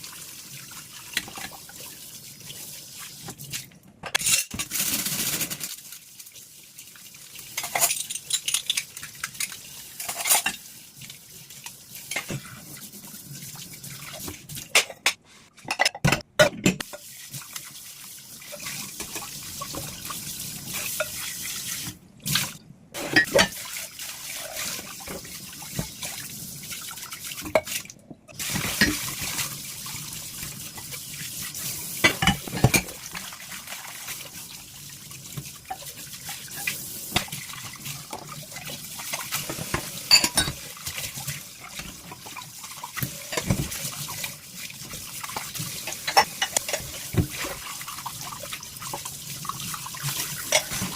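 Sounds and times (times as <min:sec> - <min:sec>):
dishes clinking and knocking: 0:14.7 - 0:16.9, 0:32.0 - 0:33.0, 0:39.5 - 0:40.6, 0:43.3 - 0:43.8.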